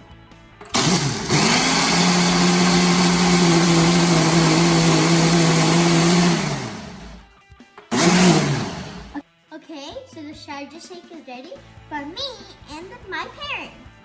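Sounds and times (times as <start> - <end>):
blender motor whirring: 0.7 - 7.3, 7.9 - 9.2.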